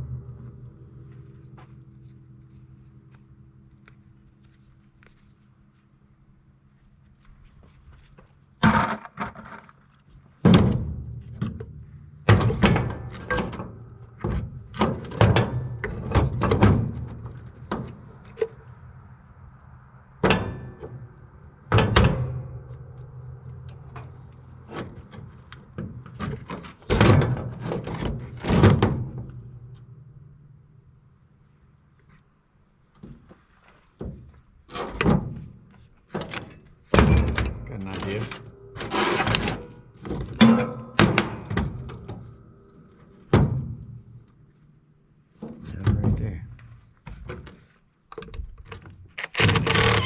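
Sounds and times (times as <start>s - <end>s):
low hum: 0.0s - 8.6s, 9.7s - 26.2s, 28.7s - 32.8s
metal parts clanking: 36.2s - 42.1s.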